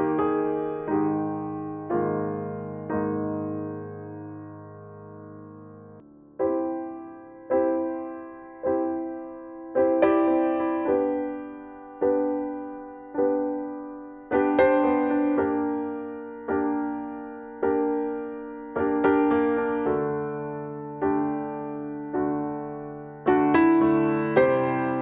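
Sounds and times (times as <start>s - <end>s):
slow piano chords: 0.0s - 25.0s.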